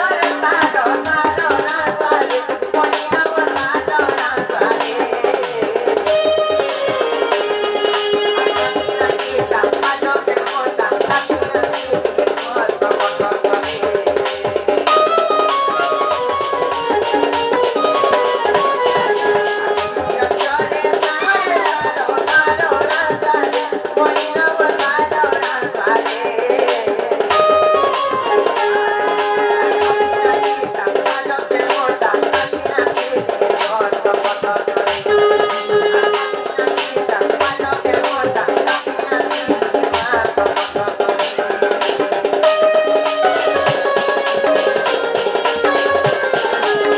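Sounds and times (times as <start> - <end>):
fast drumming: 0.0 - 46.9
melody instrument holding notes: 14.9 - 20.0.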